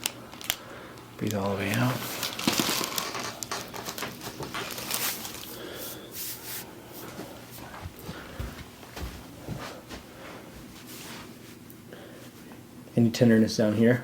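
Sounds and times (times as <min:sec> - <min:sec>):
hands rubbing over body: 0:05.8 - 0:07.7.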